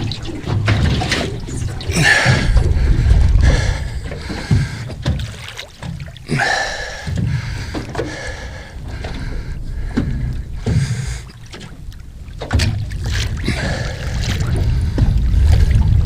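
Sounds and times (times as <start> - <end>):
water splashing around boat: 0.0 - 16.0
knocking on boat: 2.0 - 11.7.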